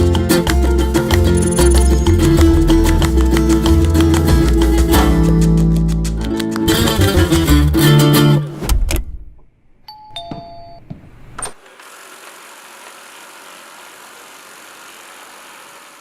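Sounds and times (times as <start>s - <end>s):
guitar music: 0.0s - 8.5s
two-tone electronic chime: 1.3s - 2.6s
vacuum suction fan whirring: 11.6s - 16.0s.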